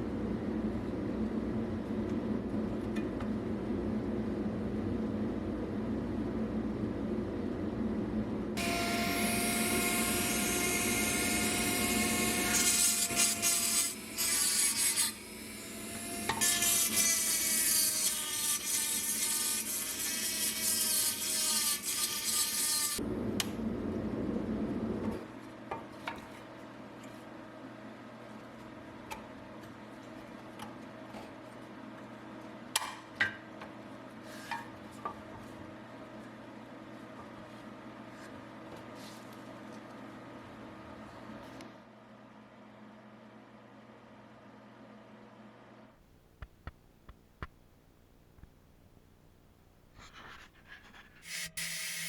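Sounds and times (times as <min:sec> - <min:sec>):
power tool grinding metal: 0:08.6 - 0:23.0, 0:51.2 - 0:52.0.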